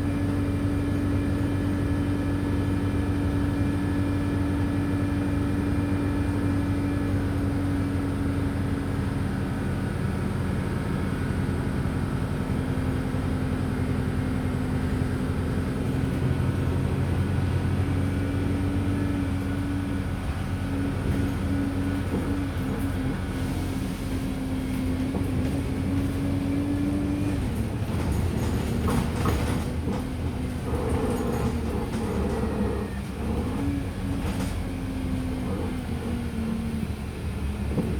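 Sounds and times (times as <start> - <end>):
bus engine drone: 0.0 - 37.9
light rattles and clicks: 27.3 - 32.6.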